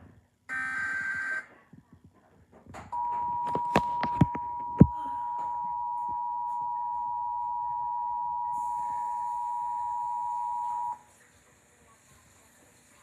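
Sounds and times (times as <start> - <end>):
two-tone alert signal: 0.5 - 1.5.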